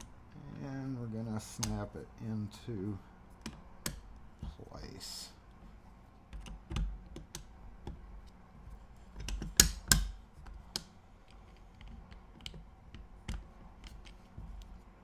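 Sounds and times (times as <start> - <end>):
metal lock parts clicking: 9.1 - 14.2.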